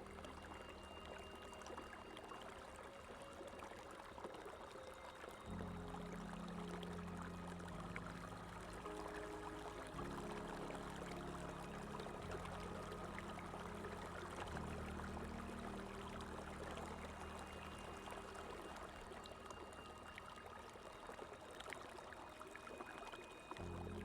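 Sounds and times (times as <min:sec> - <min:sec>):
running water: 0:00.0 - 0:24.0
soft low held music notes: 0:00.0 - 0:24.0.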